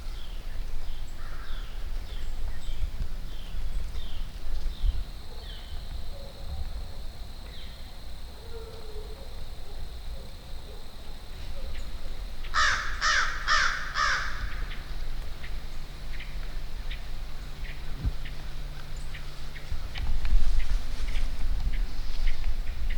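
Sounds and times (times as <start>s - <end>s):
crow cawing: 12.5s - 14.9s.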